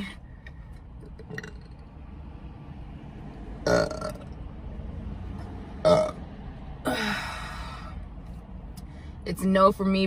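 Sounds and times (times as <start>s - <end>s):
woman burping: 3.7s - 4.3s, 5.8s - 6.2s, 6.8s - 7.4s.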